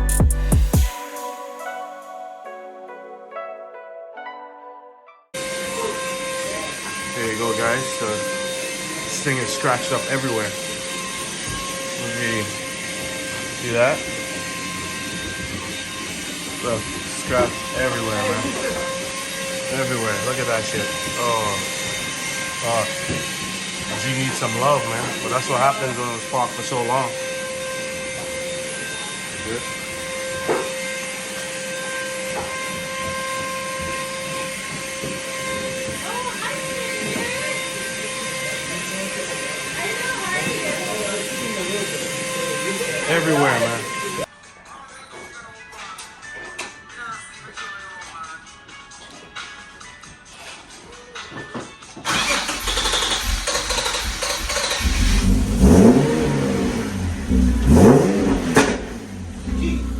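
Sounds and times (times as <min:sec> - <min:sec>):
vacuum cleaner motor whining: 0:05.4 - 0:44.3, 0:51.8 - 0:59.9
car engine starting and revving: 0:52.1 - 0:59.9.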